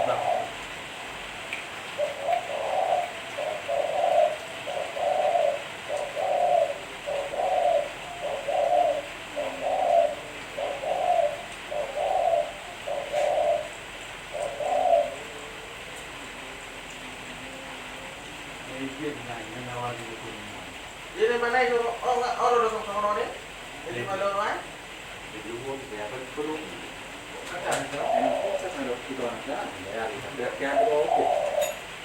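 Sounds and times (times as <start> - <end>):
dove cooing: 0.0 - 18.3, 25.6 - 32.0.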